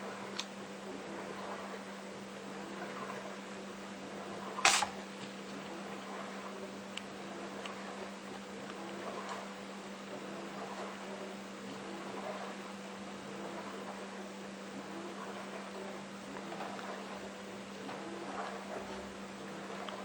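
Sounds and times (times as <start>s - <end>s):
washing machine running: 0.0s - 20.0s
kitten sneezing: 4.6s - 5.0s.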